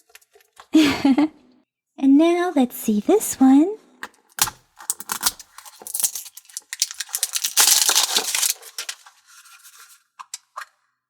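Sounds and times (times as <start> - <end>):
wrapper crinkling: 4.8 - 10.0.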